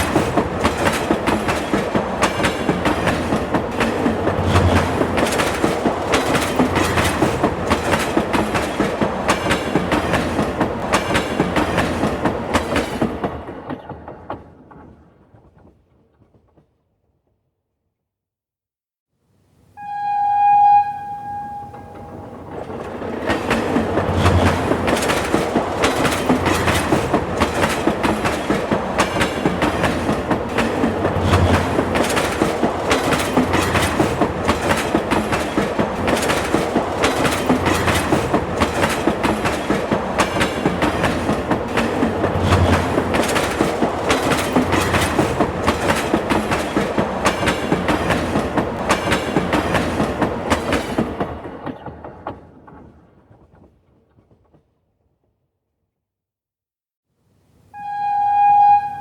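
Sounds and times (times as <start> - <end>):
train wheels clacking over rails: 0.0 - 15.9, 21.8 - 54.7
train horn blast: 19.8 - 22.5, 57.8 - 59.0.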